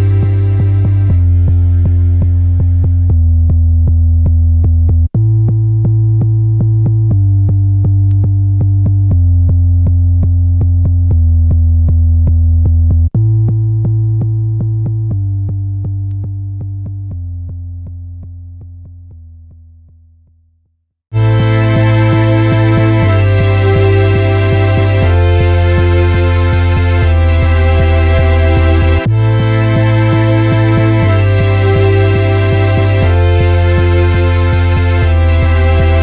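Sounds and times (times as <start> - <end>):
synthesizer chords: 0.0 - 3.1, 21.1 - 36.0.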